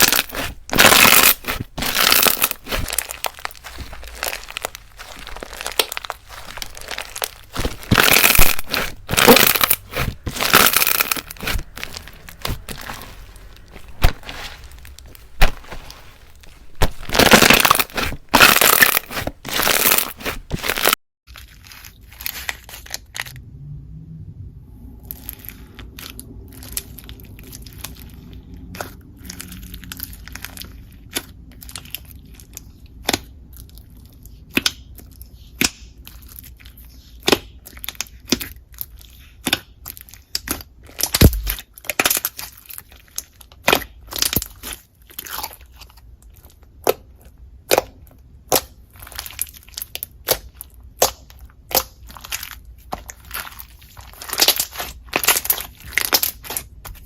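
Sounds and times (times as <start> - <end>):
slime crunching: 0.0 - 23.3, 36.0 - 57.0
slime squishing: 0.0 - 23.3, 25.0 - 57.0.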